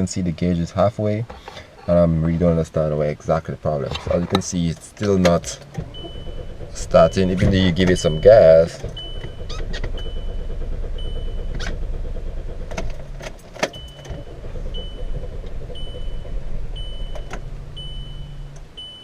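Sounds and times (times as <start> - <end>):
engine cranking without starting: 1.2 - 2.6, 3.8 - 19.0
dashboard warning chime beeping: 4.7 - 19.0.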